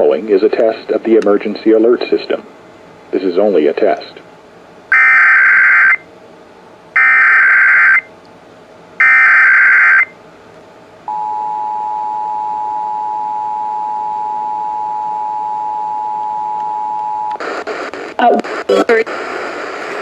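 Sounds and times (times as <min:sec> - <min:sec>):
two-tone attention signal: 0:11.1 - 0:17.3.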